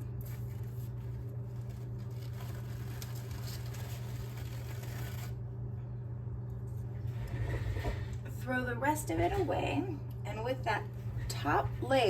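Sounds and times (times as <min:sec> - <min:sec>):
low electrical hum: 0:00.0 - 0:12.0
paper napkin rustling: 0:00.2 - 0:05.4.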